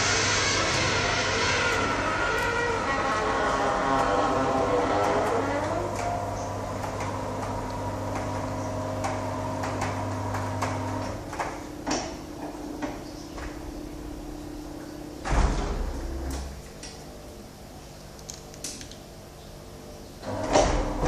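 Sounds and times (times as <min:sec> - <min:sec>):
gate squealing: 0:00.0 - 0:06.6
gate motor hum: 0:00.0 - 0:21.0.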